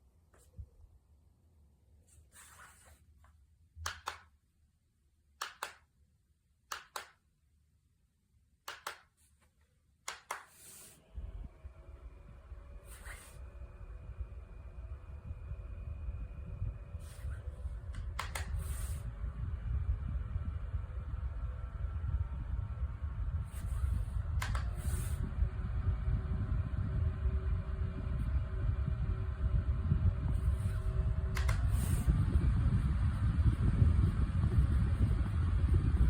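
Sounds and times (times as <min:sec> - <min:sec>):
fan airflow rumble: 0:10.6 - 0:36.0
faint motor whine: 0:10.7 - 0:36.0
low hum: 0:11.0 - 0:36.0.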